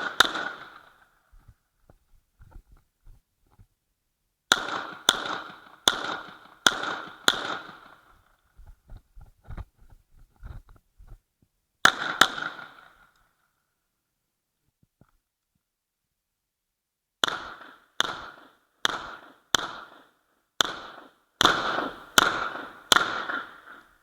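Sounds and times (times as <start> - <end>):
pistol shots with echo: 0.0 - 1.1, 4.5 - 8.2, 11.8 - 13.1, 17.2 - 23.9.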